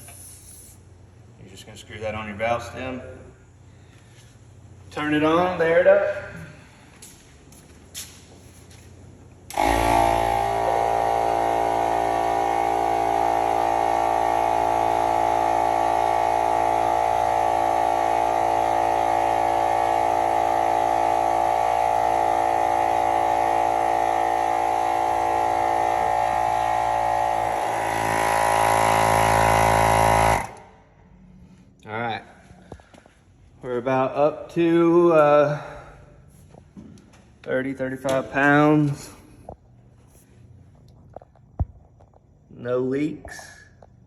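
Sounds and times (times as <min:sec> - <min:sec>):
tire compressor running: 0:00.0 - 0:01.4, 0:03.2 - 0:33.6.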